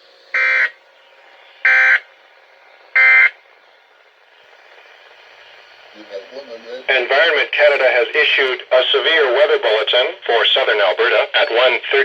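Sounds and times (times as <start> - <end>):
faint radio hiss: 0.0 - 12.0
digital data tone bursts: 0.3 - 0.8, 1.6 - 2.1, 3.0 - 3.4.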